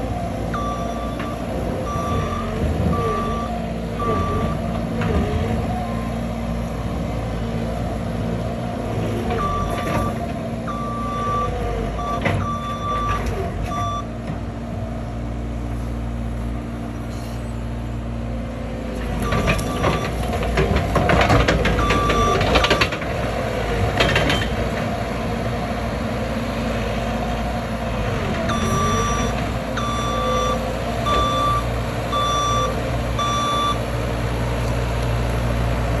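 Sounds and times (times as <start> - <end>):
diesel engine running: 0.0 - 36.0
backup alarm beeping: 0.5 - 4.7, 28.5 - 33.9.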